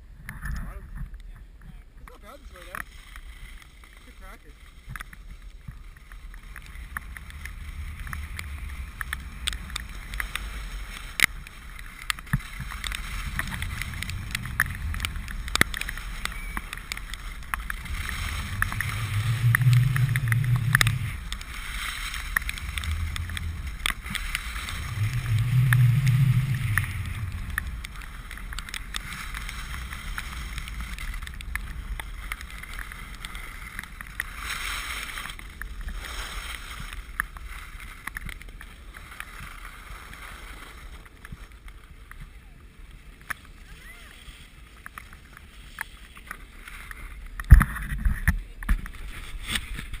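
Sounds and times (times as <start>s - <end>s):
skis sliding over wet snow: 0.2s - 50.0s
sharp ticks: 6.1s - 34.4s
wind buffeting microphone: 12.2s - 34.4s
low swells: 12.5s - 36.4s.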